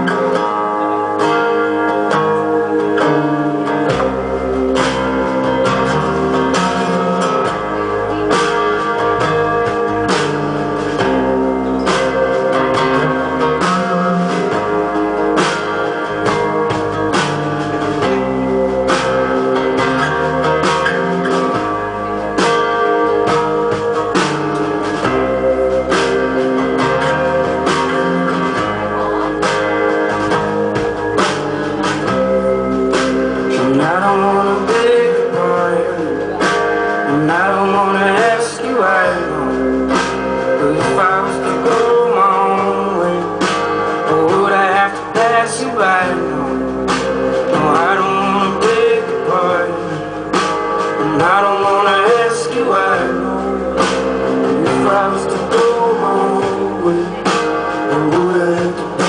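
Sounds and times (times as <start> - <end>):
acoustic guitar playing: 0.0 - 59.0
man singing: 31.8 - 59.0.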